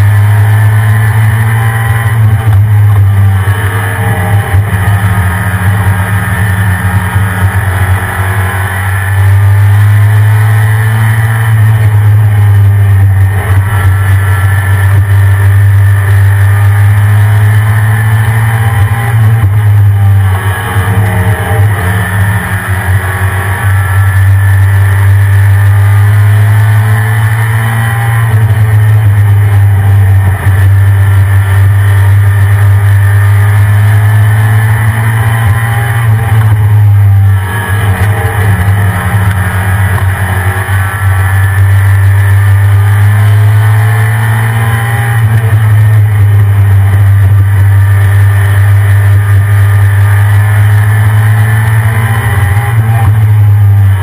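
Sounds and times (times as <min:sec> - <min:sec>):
truck engine droning: 0:00.0 - 0:54.0.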